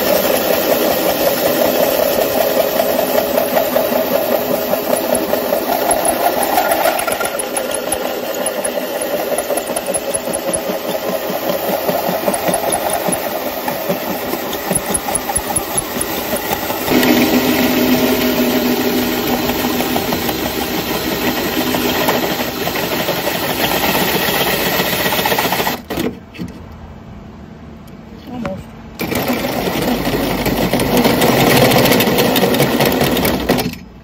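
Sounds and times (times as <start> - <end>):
handheld power tool running: 0.0 - 25.8.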